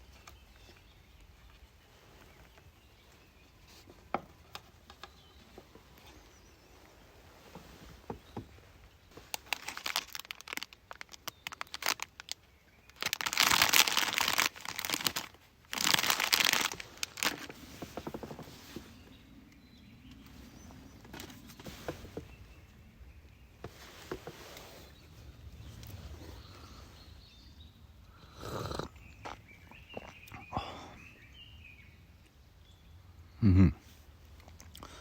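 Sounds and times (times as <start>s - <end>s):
clicks and crinkling of handling: 0.0s - 26.7s.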